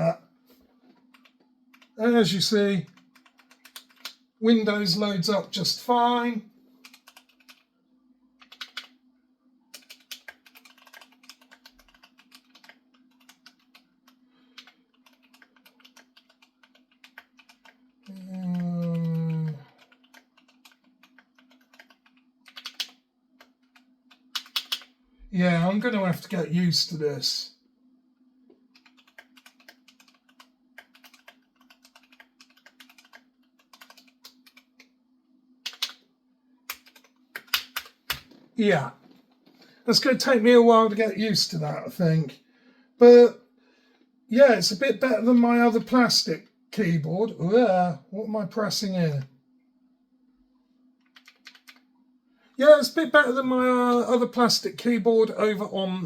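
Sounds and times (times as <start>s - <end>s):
mechanical keyboard typing: 2.8s - 4.2s, 6.8s - 7.7s, 8.4s - 9.0s, 9.7s - 24.9s, 28.7s - 34.9s, 35.6s - 36.0s, 36.7s - 38.4s, 51.1s - 51.8s.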